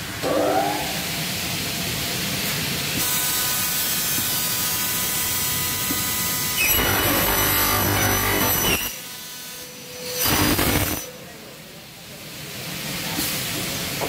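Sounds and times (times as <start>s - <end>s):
high whine of spinning blades: 0.2s - 1.3s
saw hissing: 9.9s - 11.1s.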